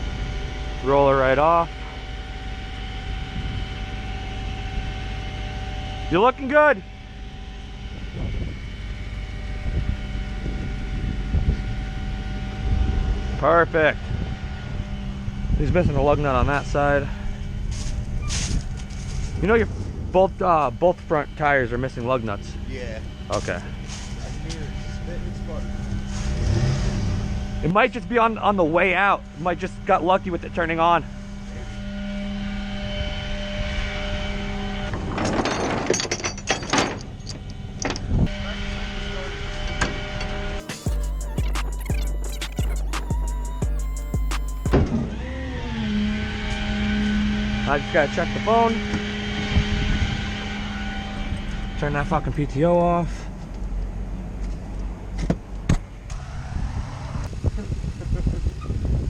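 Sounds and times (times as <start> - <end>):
wind on microphone: 3.1 - 3.8, 8.0 - 8.8, 9.6 - 13.4, 14.0 - 16.7, 56.5 - 59.0
vehicle engines idling: 14.4 - 31.8.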